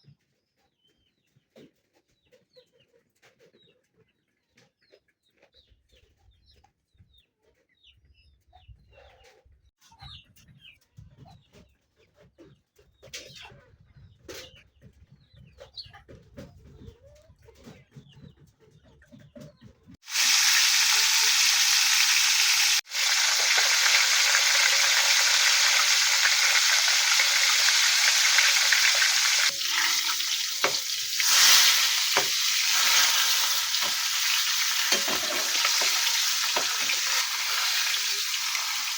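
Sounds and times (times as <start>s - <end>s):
chickens clucking: 0.1s - 20.0s, 20.6s - 38.9s
food sizzling in oil: 20.0s - 38.9s.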